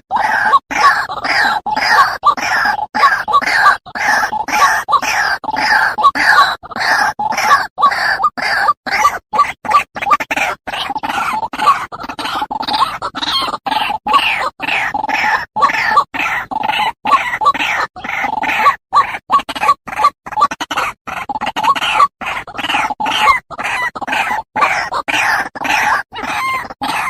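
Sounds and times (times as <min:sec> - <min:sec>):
waterhens croaking calls: 0:00.0 - 0:27.0.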